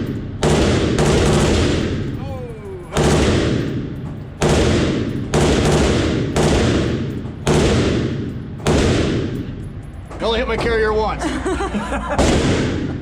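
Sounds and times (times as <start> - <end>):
machine gun single shots: 0.0 - 2.2, 3.0 - 9.6, 12.2 - 13.0.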